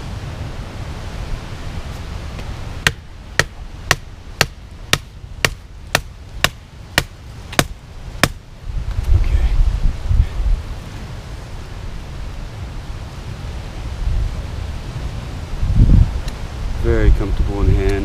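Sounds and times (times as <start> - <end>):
knife chopping hard wood: 2.8 - 8.4
wind rumble on microphone: 7.3 - 18.0.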